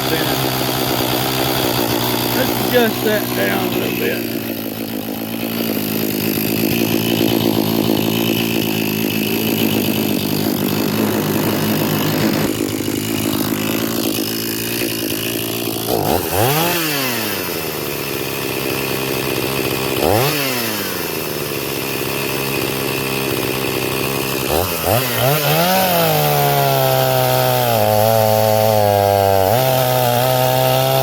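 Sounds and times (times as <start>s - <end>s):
chainsaw engine idling and revving: 0.0s - 31.0s.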